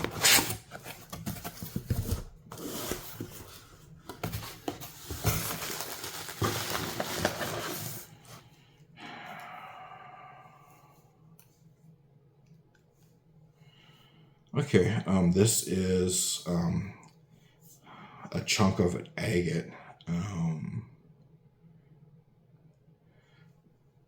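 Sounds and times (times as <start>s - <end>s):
packaging crinkling and rustling: 0.0s - 8.4s.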